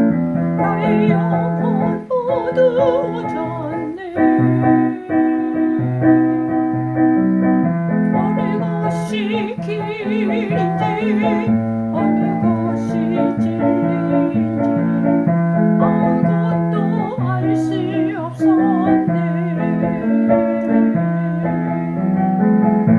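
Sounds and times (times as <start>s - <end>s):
piano-toned keyboard chords: 0.0s - 22.9s
woman singing with vibrato: 0.6s - 6.8s, 8.1s - 21.7s.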